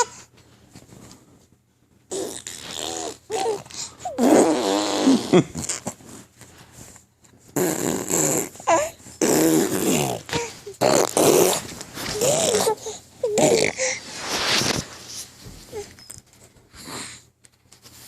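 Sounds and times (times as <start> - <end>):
baby blowing raspberries: 2.1 - 6.0, 7.6 - 14.8.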